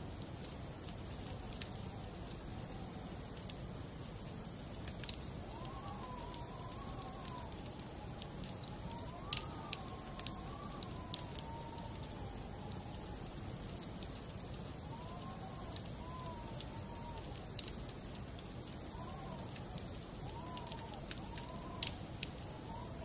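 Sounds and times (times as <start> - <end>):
wood fire crackling: 0.0 - 23.0.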